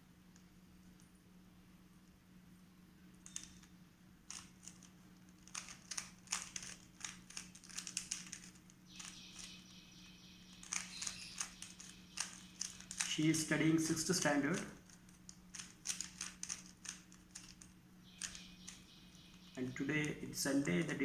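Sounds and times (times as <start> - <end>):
puzzle cube clicking: 4.3 - 9.6, 10.5 - 18.8.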